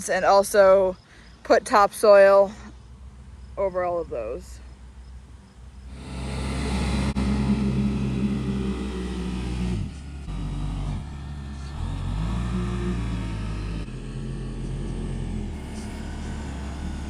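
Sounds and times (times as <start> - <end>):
tractor diesel engine under load: 5.9 - 17.0.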